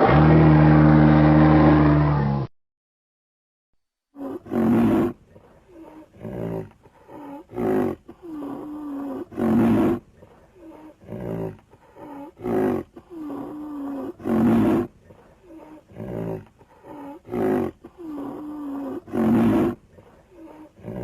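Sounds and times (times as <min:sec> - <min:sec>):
loud bellow: 0:00.0 - 0:02.5.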